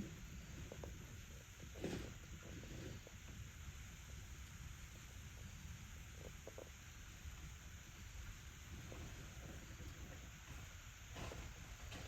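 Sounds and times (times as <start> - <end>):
outdoor background hiss and rumble: 0.0 - 12.0.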